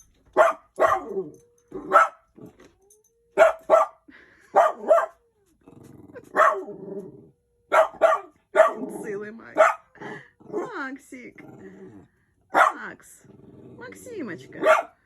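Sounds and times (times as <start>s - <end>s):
dog barking: 0.3s - 2.3s, 3.4s - 5.2s, 6.3s - 6.8s, 7.7s - 8.9s, 9.6s - 10.0s, 12.5s - 12.8s, 14.6s - 15.0s
dog growling: 5.6s - 7.4s, 9.9s - 12.3s, 13.1s - 14.8s.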